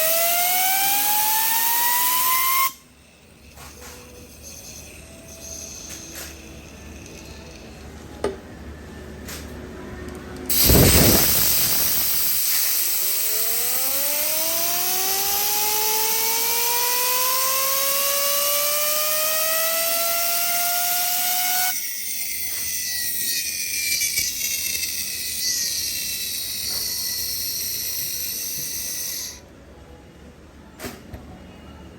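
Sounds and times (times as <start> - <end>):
rising whine of spinning part: 0.0 - 8.0, 10.5 - 29.4
blast of hissing air: 10.5 - 13.7.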